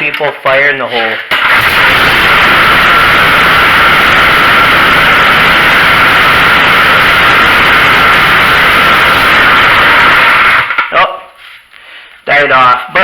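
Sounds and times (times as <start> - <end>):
engine running at full throttle: 1.4 - 10.7.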